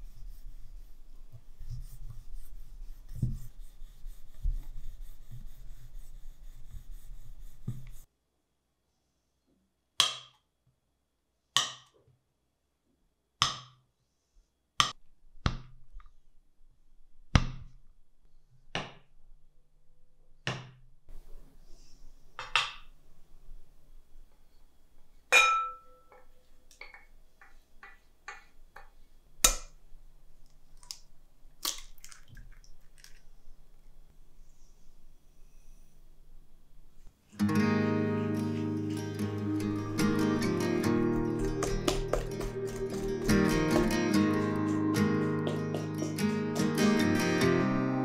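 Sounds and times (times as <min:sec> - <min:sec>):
dishes and utensils clinking: 0:25.3 - 0:27.1.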